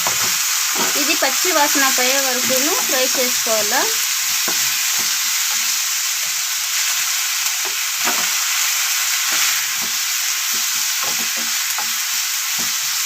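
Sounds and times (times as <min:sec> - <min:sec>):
food sizzling in hot oil: 0:00.0 - 0:13.0
spoon scraping a pan: 0:07.6 - 0:13.0.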